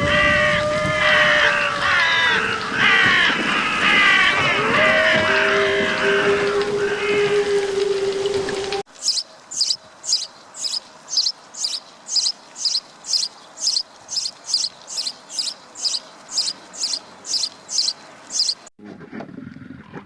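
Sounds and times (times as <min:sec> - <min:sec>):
faint steady hiss: 0:08.9 - 0:18.7
animal high-pitched chirp: 0:09.0 - 0:18.7.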